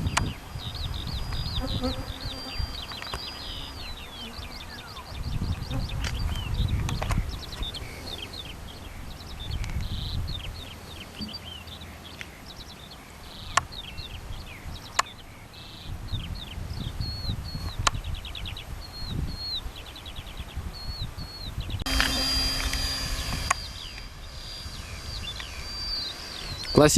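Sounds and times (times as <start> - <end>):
wind rumble on microphone: 0.0 - 10.7, 13.4 - 26.9
small birds chirping: 0.0 - 26.9
sharp clicks: 21.9 - 24.1.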